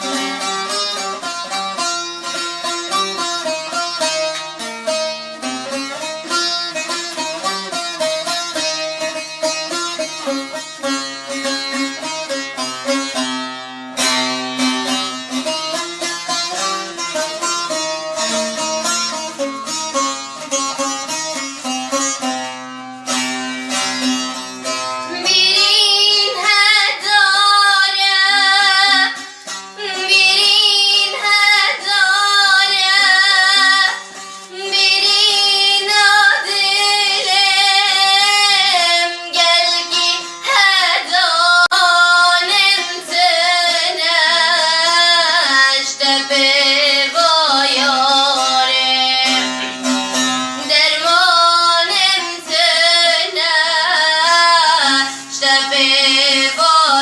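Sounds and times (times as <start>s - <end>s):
instrumental accompaniment: 0.0s - 57.0s
woman singing ornamented melody: 25.0s - 49.7s, 50.6s - 57.0s.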